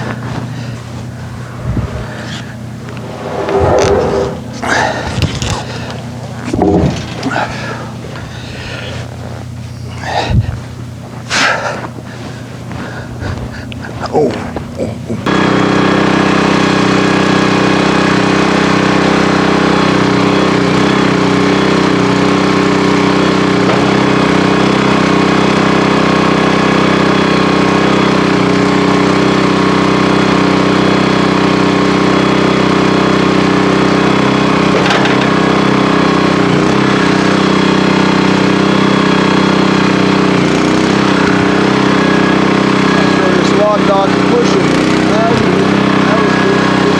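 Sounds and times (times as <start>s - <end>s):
band sawmill cutting log: 1.0s - 5.6s, 21.8s - 27.2s, 30.2s - 46.9s.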